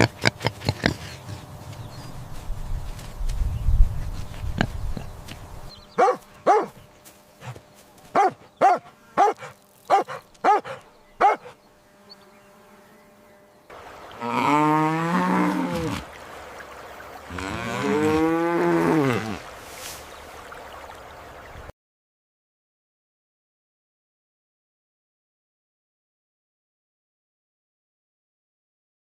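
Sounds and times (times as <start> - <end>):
dog barking: 6.0 - 6.8, 8.1 - 11.6
cow mooing: 14.2 - 16.1, 17.3 - 19.5.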